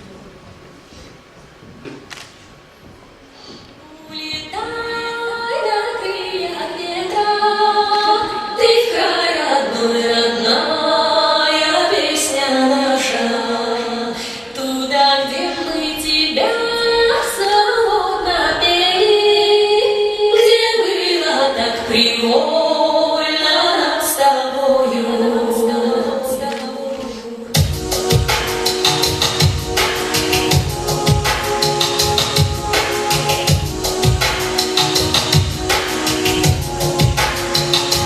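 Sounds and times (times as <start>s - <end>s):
woman singing: 3.8s - 37.4s
backing track: 25.4s - 38.0s.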